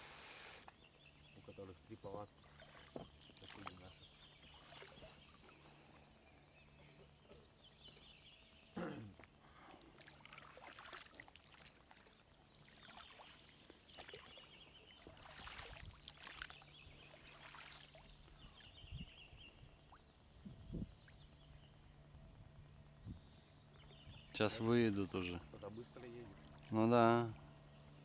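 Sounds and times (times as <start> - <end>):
distant outboard motor hum: 0.0 - 28.0
water splashing and trickling: 2.1 - 6.2, 9.1 - 20.2, 24.4 - 27.5.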